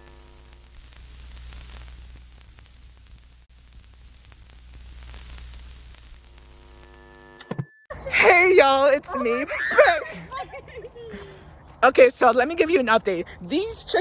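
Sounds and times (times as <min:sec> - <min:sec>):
static hiss: 0:00.0 - 0:09.4
steady low hum: 0:00.0 - 0:11.9.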